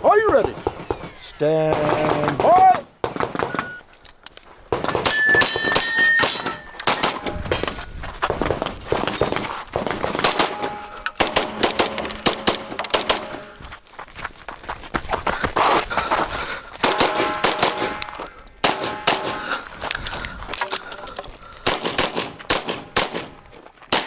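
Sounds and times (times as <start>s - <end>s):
pistol shots in rapid strings: 10.2s - 13.4s.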